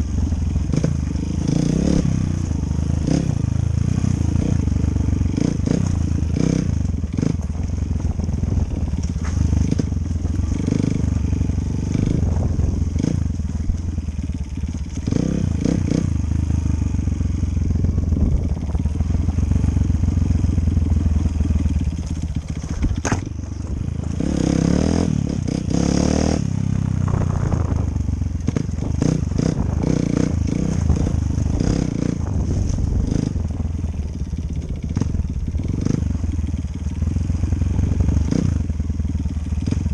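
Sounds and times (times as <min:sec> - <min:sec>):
dirt bike engine revving: 0:00.0 - 0:39.9
bike clattering over rough ground: 0:07.1 - 0:10.6, 0:21.9 - 0:23.9.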